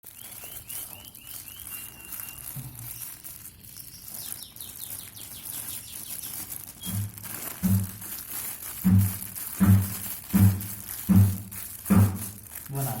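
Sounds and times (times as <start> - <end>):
thin bird whistle: 0.0 - 7.1
bird chirping: 0.0 - 8.1.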